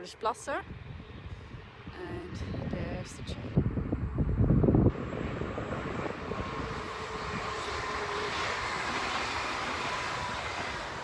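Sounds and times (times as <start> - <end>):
passing train rumble: 0.0 - 11.0.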